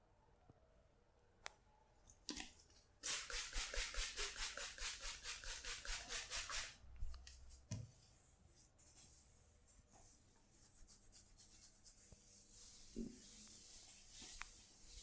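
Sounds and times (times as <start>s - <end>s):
hands rubbing vigorously: 10.5s - 15.0s.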